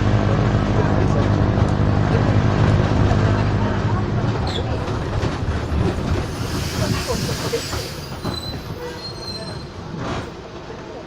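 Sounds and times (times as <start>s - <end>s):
bus diesel engine rumble: 0.0s - 11.0s
brake squeals and creaks: 4.4s - 4.8s, 6.0s - 10.3s.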